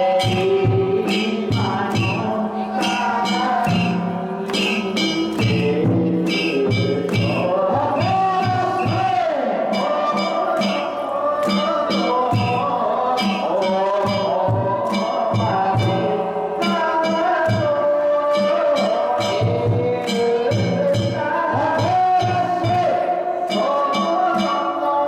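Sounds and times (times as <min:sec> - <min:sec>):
low drum beats: 0:00.0 - 0:09.3.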